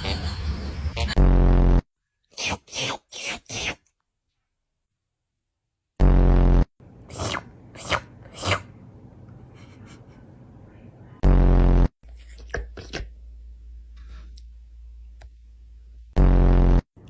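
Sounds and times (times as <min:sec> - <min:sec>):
loud low buzzing tone: 0:01.1 - 0:01.8, 0:06.0 - 0:06.7, 0:11.2 - 0:11.9, 0:15.6 - 0:16.9.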